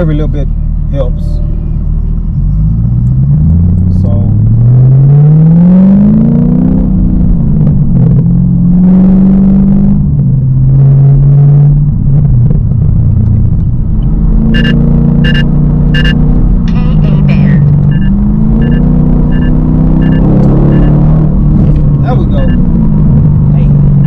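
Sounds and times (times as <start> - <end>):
car engine revving: 0.0 - 24.0
short high beeps: 14.6 - 16.2, 17.8 - 21.0.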